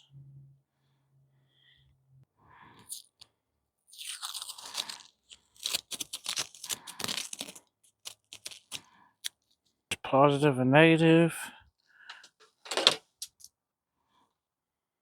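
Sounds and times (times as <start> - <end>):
plastic packaging crinkling: 4.0 - 9.6.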